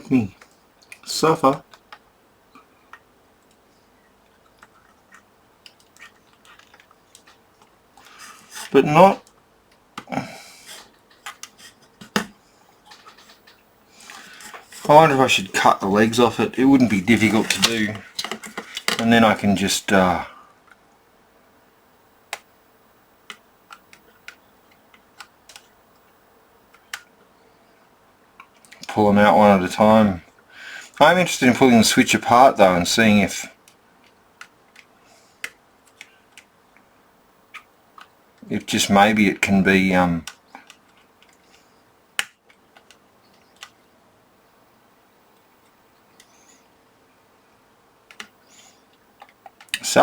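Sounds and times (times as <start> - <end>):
small tools clicking and tapping: 17.4 - 19.0.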